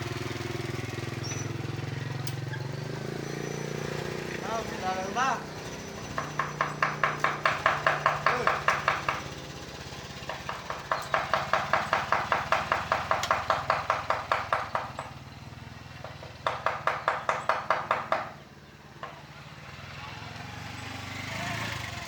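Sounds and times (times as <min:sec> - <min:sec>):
mallet tapping chisel into wood: 0:06.2 - 0:09.2, 0:10.2 - 0:15.1, 0:16.0 - 0:18.3.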